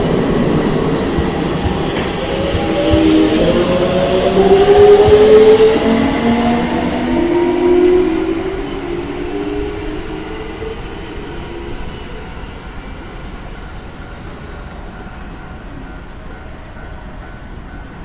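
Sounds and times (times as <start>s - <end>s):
train inverter whining: 0.0s - 13.0s.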